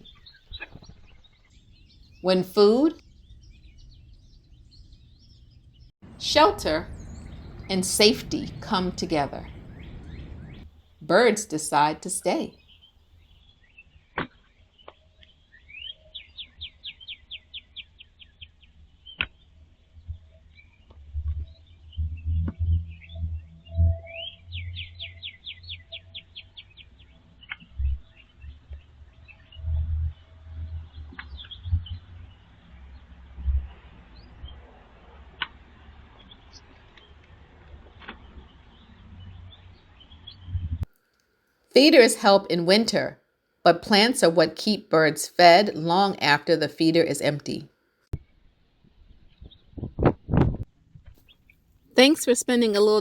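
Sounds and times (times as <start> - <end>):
songbird singing a trill: 0.0 - 10.7, 11.7 - 19.4, 21.4 - 33.0
birds chirping: 0.0 - 12.9, 52.0 - 53.0
small birds chirping: 0.0 - 22.3, 24.1 - 33.1.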